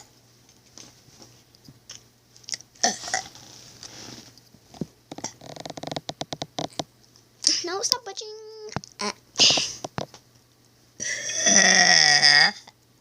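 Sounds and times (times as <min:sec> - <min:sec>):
person burping: 0:11.0 - 0:12.8.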